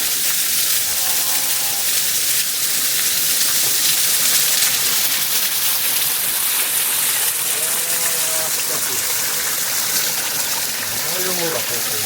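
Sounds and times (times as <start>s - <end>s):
waterfall rushing: 4.1s - 12.0s.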